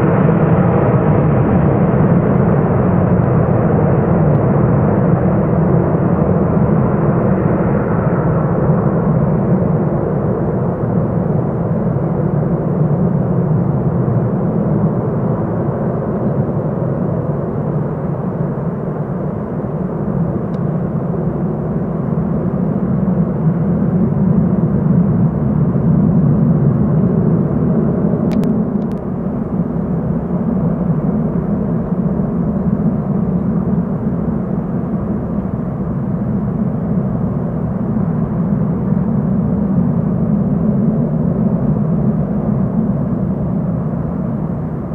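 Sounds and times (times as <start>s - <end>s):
faint hum: 0.0s - 44.9s
jet engines rumbling: 0.0s - 44.9s
faint click: 28.3s - 29.1s.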